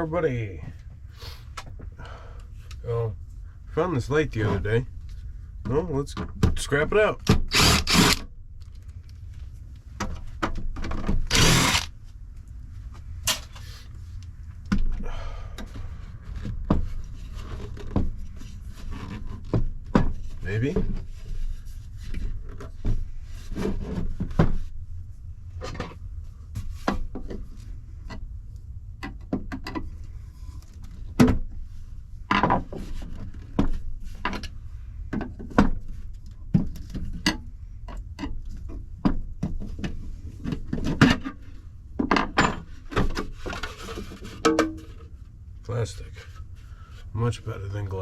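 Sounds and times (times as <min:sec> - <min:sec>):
steady low hum: 0:00.0 - 0:40.7, 0:41.4 - 0:48.0.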